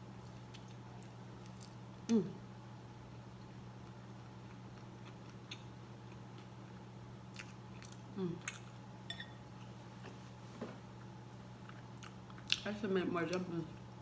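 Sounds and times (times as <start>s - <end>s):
person chewing food: 3.8s - 8.8s, 11.6s - 12.6s.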